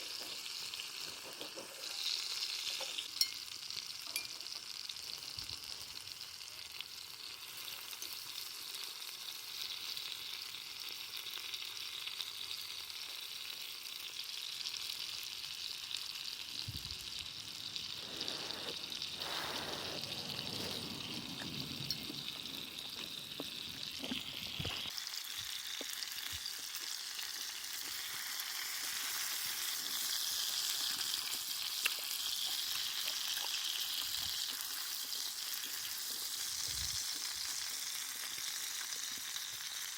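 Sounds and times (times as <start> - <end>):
meat sizzling over fire: 0.0 - 39.9
fire crackling: 14.5 - 39.3.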